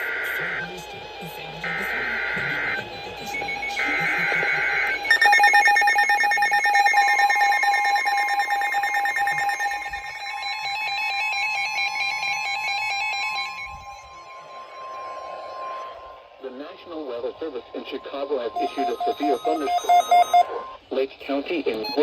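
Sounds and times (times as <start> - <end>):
digital header burst: 0.0 - 20.9
rapid electronic beeping alarms: 0.0 - 21.0, 21.8 - 22.0
steady warning tone: 0.0 - 21.0, 21.7 - 22.0.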